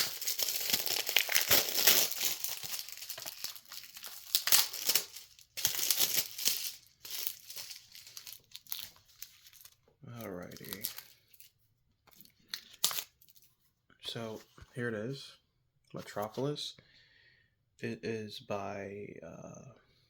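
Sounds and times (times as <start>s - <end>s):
wrapping tearing and crinkling: 0.0s - 13.5s.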